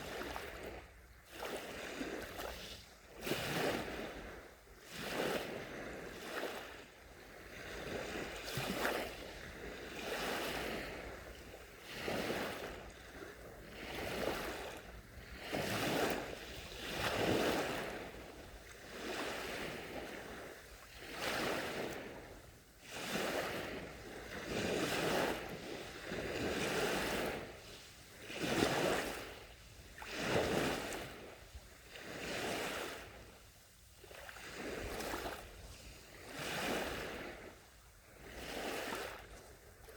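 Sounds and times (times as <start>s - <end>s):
gentle sea waves on beach: 0.0s - 39.9s.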